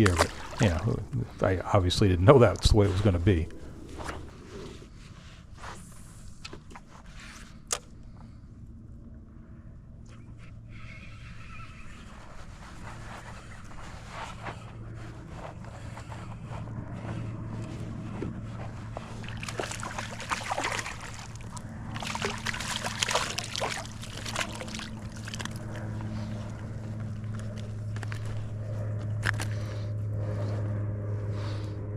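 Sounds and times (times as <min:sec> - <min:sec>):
water splashing around a kayak: 0:00.0 - 0:01.1, 0:18.8 - 0:28.4
steady low hum: 0:00.0 - 0:31.9.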